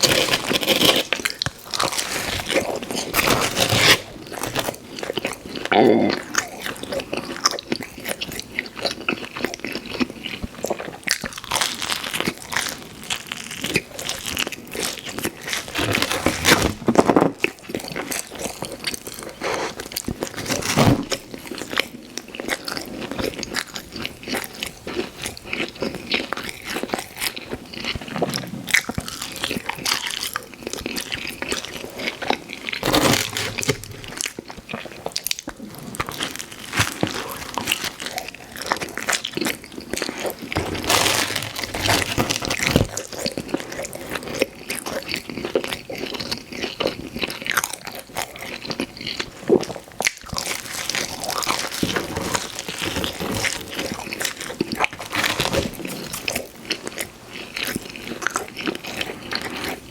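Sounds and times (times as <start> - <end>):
crust crackling: 31.4 - 44.4.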